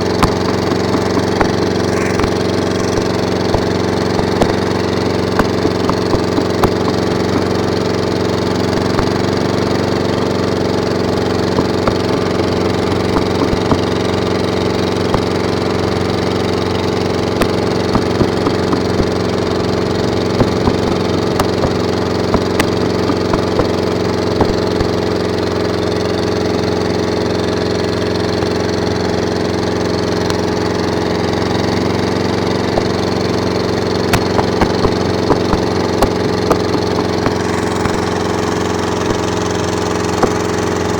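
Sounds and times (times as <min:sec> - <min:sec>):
motor running steadily: 0:00.0 - 0:40.9
small clicks and crackles: 0:11.4 - 0:25.2.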